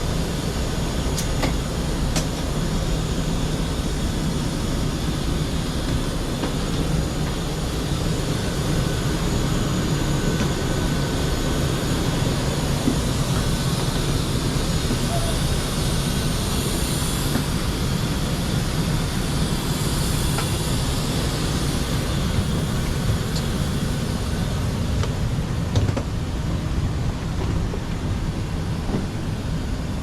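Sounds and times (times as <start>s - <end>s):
low rumble in airliner cabin: 0.0s - 30.0s.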